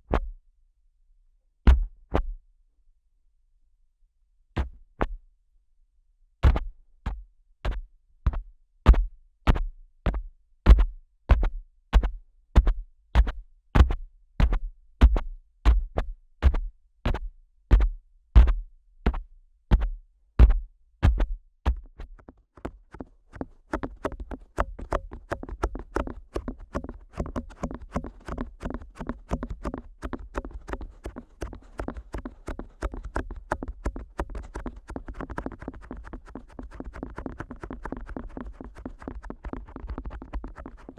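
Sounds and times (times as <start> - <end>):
thumps on microphone ear: 1.7 - 2.4, 4.6 - 5.2, 6.4 - 35.6
tapping and rubbing on microphone ears: 6.4 - 40.9.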